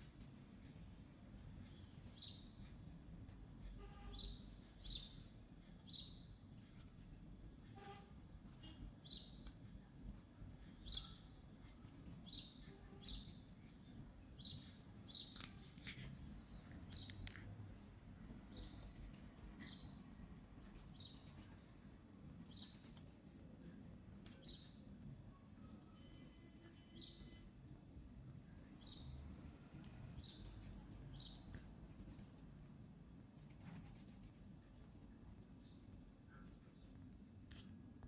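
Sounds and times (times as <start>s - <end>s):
bird chirping: 3.9s - 6.3s, 10.8s - 11.4s, 12.2s - 13.4s, 14.4s - 15.5s, 18.4s - 19.0s, 19.6s - 20.0s, 28.8s - 31.5s.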